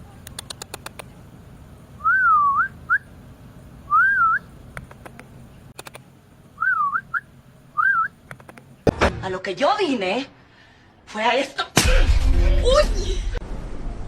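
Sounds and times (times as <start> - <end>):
quick clicks: 0.2 - 1.1, 4.7 - 6.1, 8.2 - 8.7.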